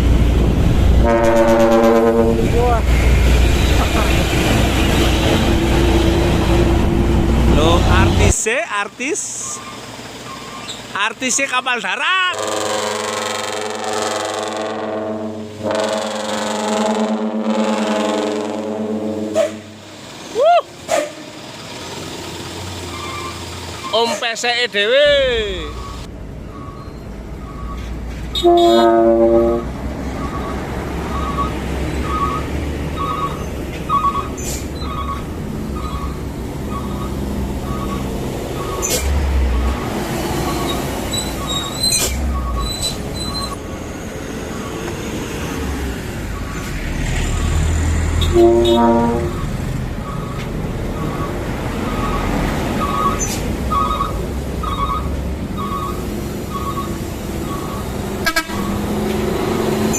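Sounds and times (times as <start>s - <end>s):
diesel engine rumble: 0.0s - 59.9s
truck air horn blasts: 1.0s - 2.7s, 12.3s - 19.9s, 28.3s - 29.8s, 48.1s - 49.5s, 58.2s - 58.9s
faint regular beeping: 25.7s - 27.9s, 35.8s - 38.9s.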